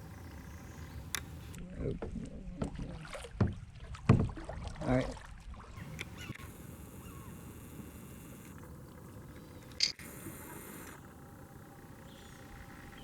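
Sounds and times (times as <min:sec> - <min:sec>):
low water noise: 0:00.0 - 0:13.0
paddle knocks and splashes: 0:01.9 - 0:05.8.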